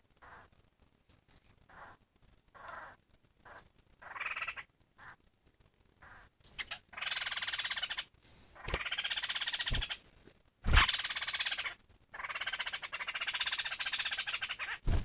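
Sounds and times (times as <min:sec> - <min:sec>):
fast-pulsed rattling bird calls: 0:01.7 - 0:05.2, 0:06.0 - 0:10.0, 0:10.7 - 0:15.0
laughingthrush calling: 0:02.6 - 0:05.1, 0:06.0 - 0:10.0, 0:10.7 - 0:15.0.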